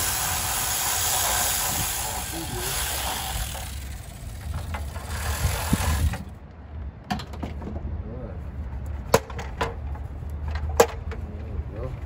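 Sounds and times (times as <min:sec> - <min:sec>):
steady hiss: 0:00.0 - 0:04.0.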